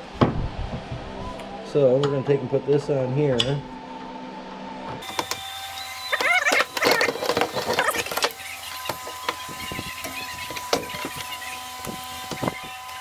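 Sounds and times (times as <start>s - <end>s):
squeaking and clattering: 5.0s - 13.0s.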